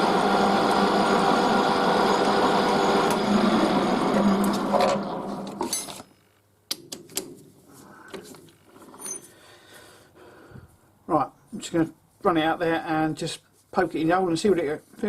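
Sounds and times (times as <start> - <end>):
machine tool winding down: 0.0 - 5.8
metal parts clicking and clunking: 4.8 - 6.1.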